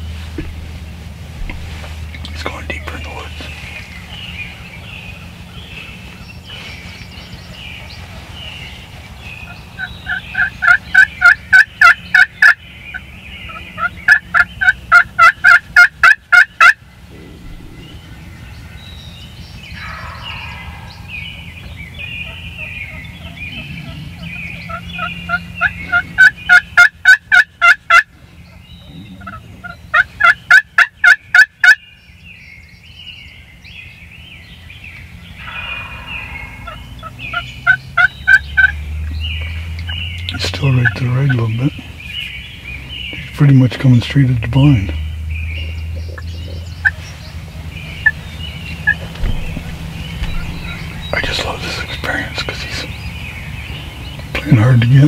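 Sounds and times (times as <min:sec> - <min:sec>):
turkey yelping: 0:09.4 - 0:16.8, 0:19.7 - 0:31.8, 0:35.2 - 0:38.8, 0:45.6 - 0:51.8
faint choppy bird calls: 0:35.0 - 0:38.7, 0:45.6 - 0:54.7.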